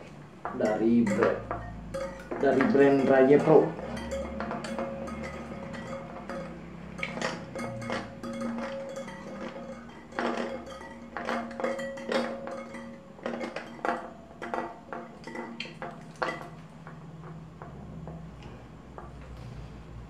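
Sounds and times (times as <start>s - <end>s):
metallic clinks of bike tools: 0.6s - 14.1s.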